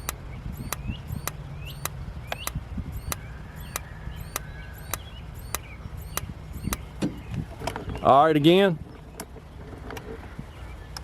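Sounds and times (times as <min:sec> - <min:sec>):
igniter clicking: 0:00.0 - 0:06.9.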